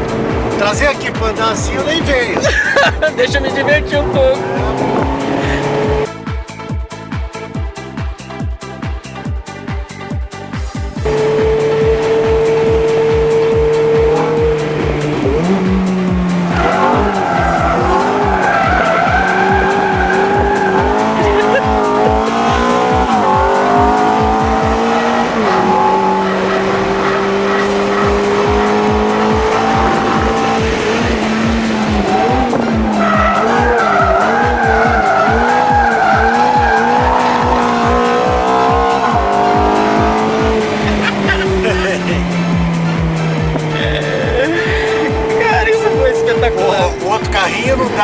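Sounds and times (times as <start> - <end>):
car engine: 0.0 - 6.1, 11.0 - 48.0
background music with steady beat: 0.0 - 48.0
tyres squealing: 11.1 - 48.0.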